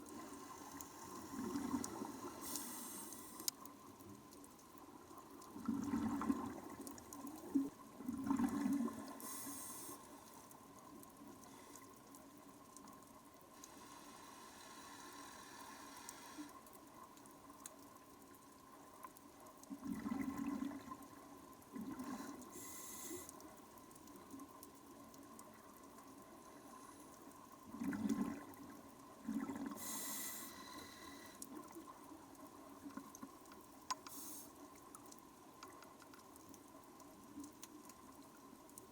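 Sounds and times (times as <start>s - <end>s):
exhaled bubbles underwater: 1.0s - 2.4s, 5.3s - 9.4s, 19.6s - 22.6s, 27.6s - 30.1s
regulator inhalation hiss: 2.0s - 3.5s, 9.2s - 10.2s, 13.7s - 16.6s, 22.5s - 23.4s, 29.8s - 31.4s, 34.0s - 34.6s.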